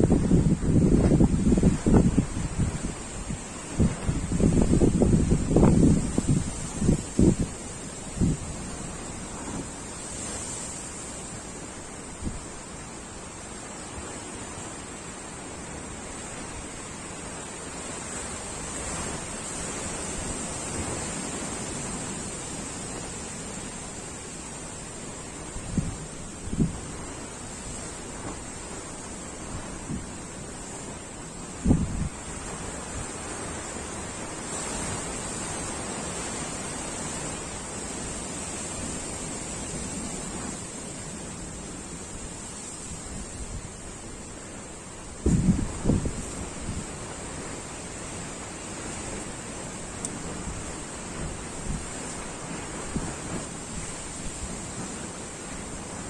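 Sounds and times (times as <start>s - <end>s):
wind on microphone: 0.0s - 13.2s, 25.1s - 56.0s
waves breaking on shore: 0.0s - 56.0s.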